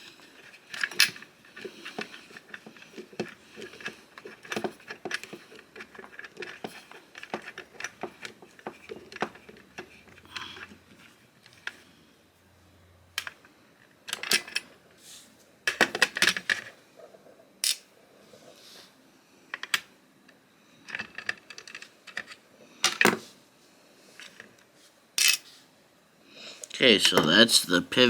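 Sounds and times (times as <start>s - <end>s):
small metal tools clattering: 25.2s - 25.5s.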